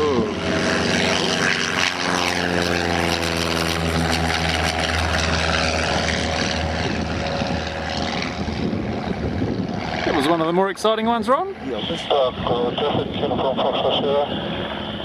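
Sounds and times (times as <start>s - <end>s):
propeller aircraft engine drone: 0.0s - 15.0s
wind rumbling on microphone: 0.0s - 15.0s.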